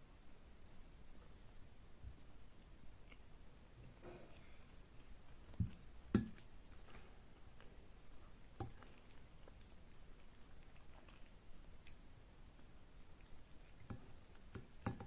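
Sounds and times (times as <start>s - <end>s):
wet eating clicks: 4.7s - 6.9s, 13.2s - 15.0s.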